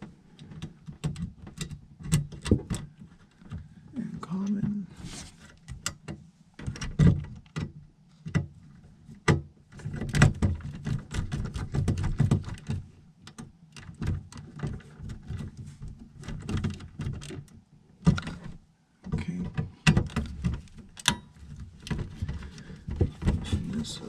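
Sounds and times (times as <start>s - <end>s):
rustling handling noise: 2.9s - 6.7s, 18.2s - 24.0s.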